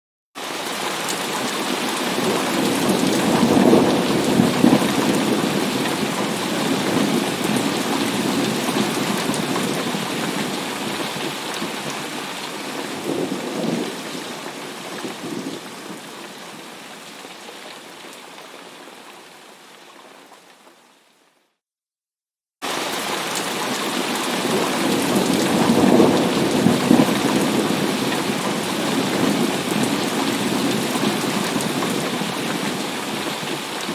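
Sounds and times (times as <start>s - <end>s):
heavy rain pouring: 0.4s - 20.8s, 22.6s - 33.9s
thunder rumbling: 12.7s - 16.1s, 24.4s - 32.8s.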